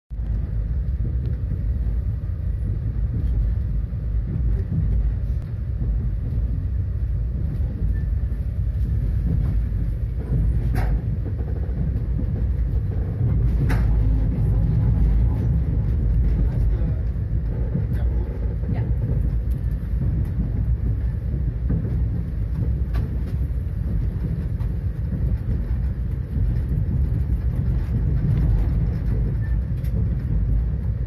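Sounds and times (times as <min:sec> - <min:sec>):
train rumble inside carriage: 0:00.1 - 0:31.0.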